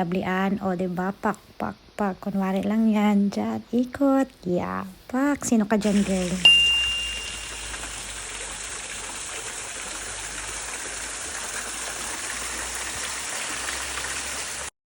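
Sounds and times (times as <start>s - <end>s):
flowing water rushing: 5.8s - 14.7s.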